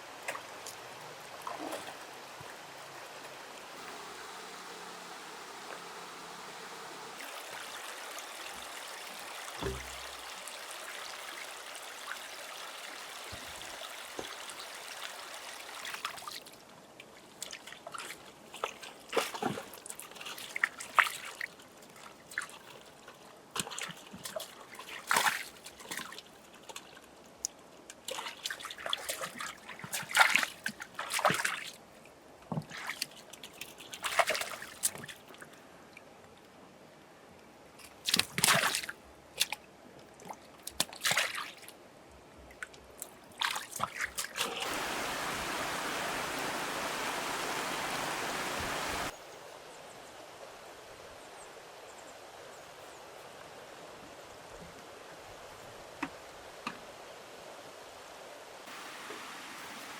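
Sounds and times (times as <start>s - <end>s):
water sloshing and splashing: 1.4s - 2.1s, 7.2s - 11.4s, 13.2s - 27.1s, 27.9s - 31.8s, 32.5s - 35.6s, 37.8s - 41.8s, 42.4s - 45.2s
water trickling: 3.8s - 16.4s.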